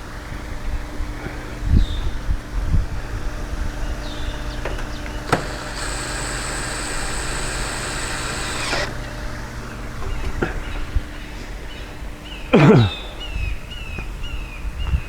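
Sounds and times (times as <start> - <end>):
small electric motor whining: 3.4 - 10.0
sharp click: 4.6 - 9.0.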